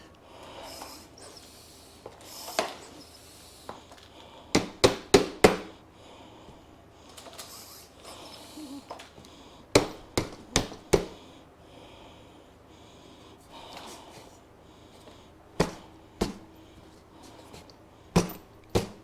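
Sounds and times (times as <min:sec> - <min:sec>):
tyre pump puffing air: 0:00.5 - 0:03.9.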